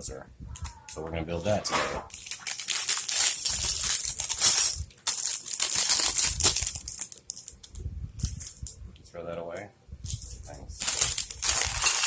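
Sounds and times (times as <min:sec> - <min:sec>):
plastic bag crinkling: 0:02.1 - 0:08.7, 0:10.8 - 0:12.0.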